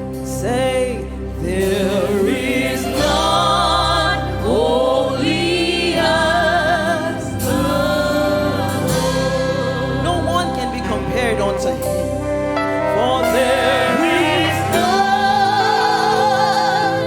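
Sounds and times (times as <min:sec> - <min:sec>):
gospel singing with vibrato: 0:00.0 - 0:17.0
instrumental backing: 0:00.0 - 0:17.0.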